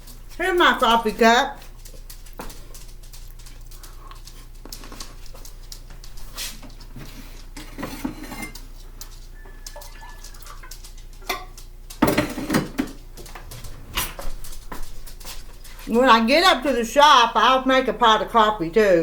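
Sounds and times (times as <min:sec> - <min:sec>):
dishes and cutlery clinking: 0:07.6 - 0:08.6.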